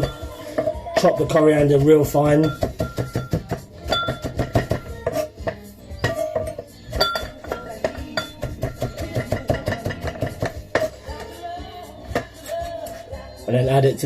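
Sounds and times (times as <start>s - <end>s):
knife chopping on a board: 2.5s - 5.6s.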